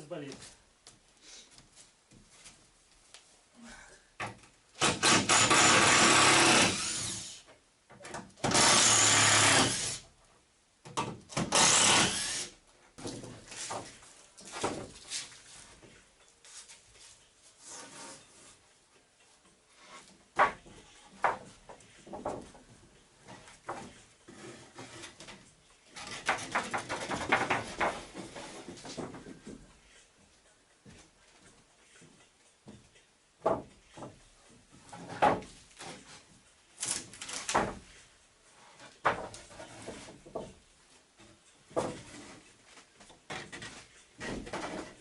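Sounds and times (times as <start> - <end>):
soft scraping and rubbing: 15.0 - 18.7, 38.5 - 40.2
hard objects knocking and clattering: 26.0 - 29.7.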